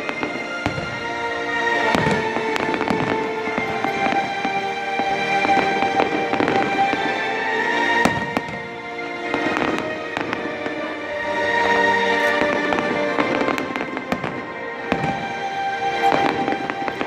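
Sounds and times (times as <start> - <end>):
fireworks crackling and banging: 0.0 - 7.2, 12.2 - 17.0
music with long held notes: 0.0 - 17.0.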